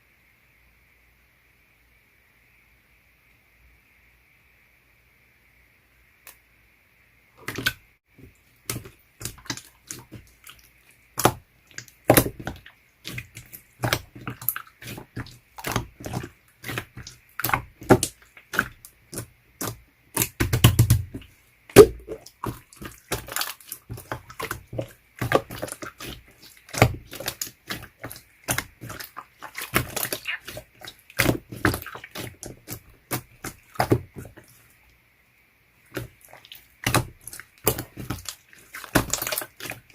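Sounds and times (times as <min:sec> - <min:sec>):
slime squishing with sticky pops: 0:08.6 - 0:34.6, 0:35.9 - 0:39.9.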